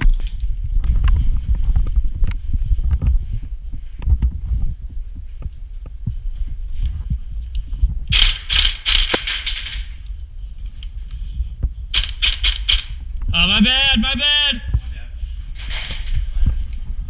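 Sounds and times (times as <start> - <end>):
rapid airsoft gun shots: 8.1 - 9.9, 11.9 - 13.0.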